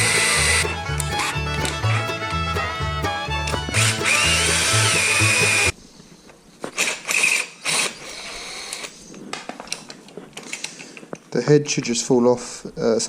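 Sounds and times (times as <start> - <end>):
background music: 0.0 - 5.7
power drill whining: 3.7 - 5.8.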